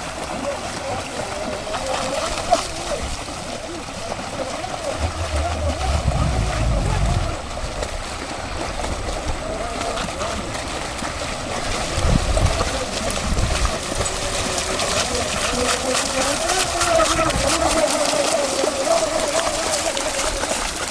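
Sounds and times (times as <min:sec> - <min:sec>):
wind gusts on microphone: 0:04.8 - 0:08.1.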